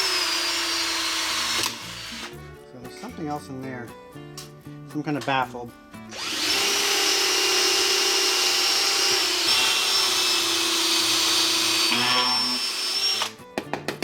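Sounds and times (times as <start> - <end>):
electric drill boring plastic: 0.0 - 2.3, 6.1 - 13.4.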